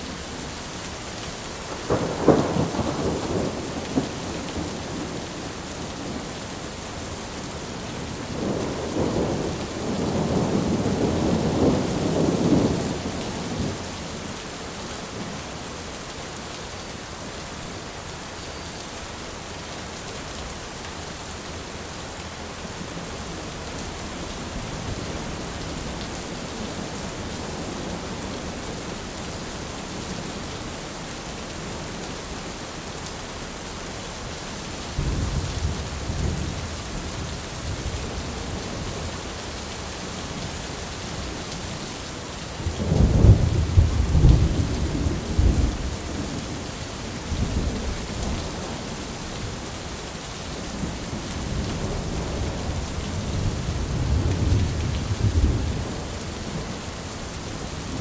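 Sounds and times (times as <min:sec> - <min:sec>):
heavy rain: 0:00.0 - 0:58.0
rolling thunder: 0:01.8 - 0:05.2, 0:08.0 - 0:13.8, 0:42.6 - 0:46.6.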